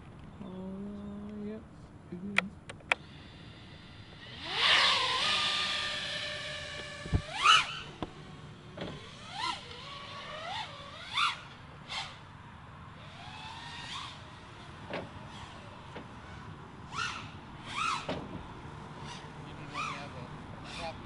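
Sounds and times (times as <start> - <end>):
drone motors whining: 2.8 - 12.3, 12.9 - 21.0.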